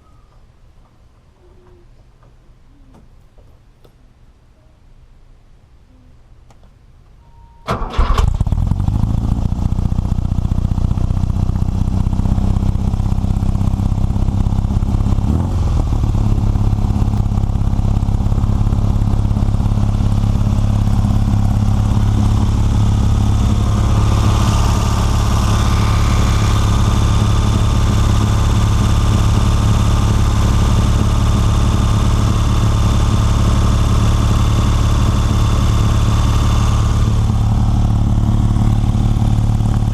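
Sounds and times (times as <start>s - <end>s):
car engine idling: 8.0s - 39.9s.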